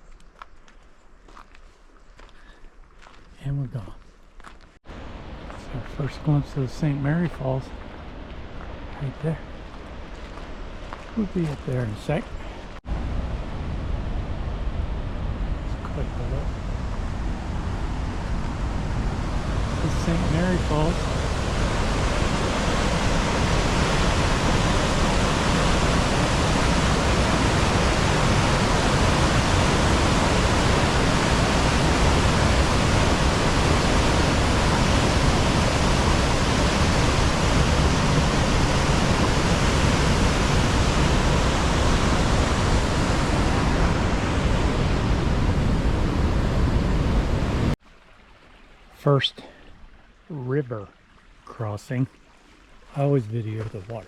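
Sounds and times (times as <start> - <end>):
waterfall rushing: 18.5 - 47.8.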